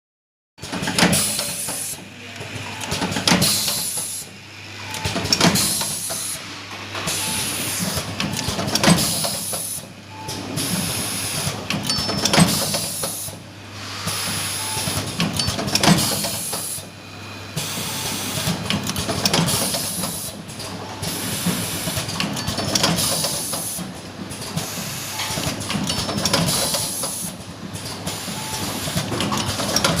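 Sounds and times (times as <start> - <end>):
machine clacking: 4.9 - 10.8, 17.7 - 30.0.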